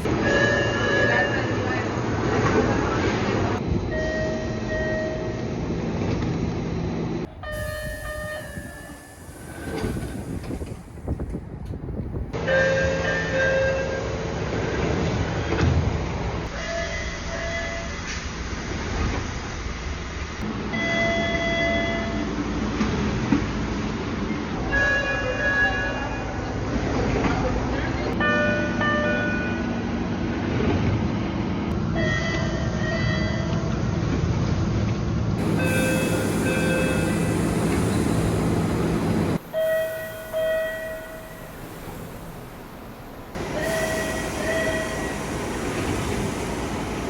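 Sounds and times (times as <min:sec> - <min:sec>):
subway door chime: 0:00.0 - 0:03.0, 0:03.6 - 0:05.6, 0:07.2 - 0:15.0, 0:16.4 - 0:18.4, 0:20.7 - 0:22.6, 0:24.6 - 0:26.8, 0:28.1 - 0:30.0, 0:31.9 - 0:33.8, 0:35.4 - 0:47.0
train rumble: 0:00.0 - 0:47.0.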